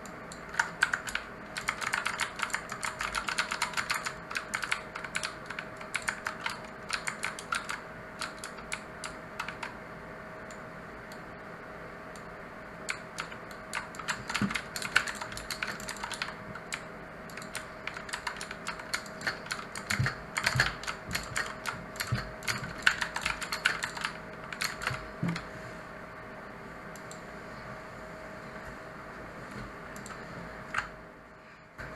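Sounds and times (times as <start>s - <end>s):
clicky mechanical keyboard typing: 0.0s - 9.8s, 12.9s - 25.4s, 30.0s - 31.0s.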